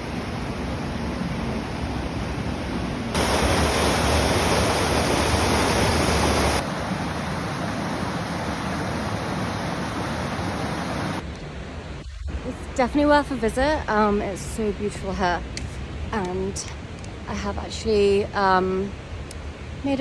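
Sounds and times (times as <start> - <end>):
waterfall rushing: 3.1 - 11.2.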